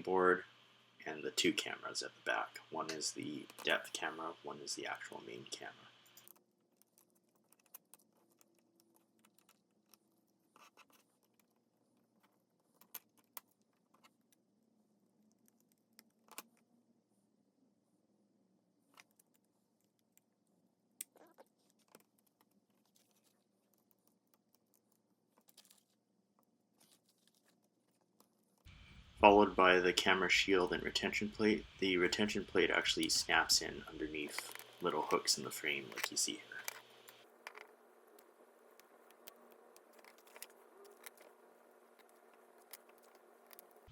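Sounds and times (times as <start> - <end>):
small parts clicking and scratching: 2.3 - 4.2, 5.9 - 14.5, 15.1 - 16.8, 18.8 - 29.0, 32.9 - 43.9.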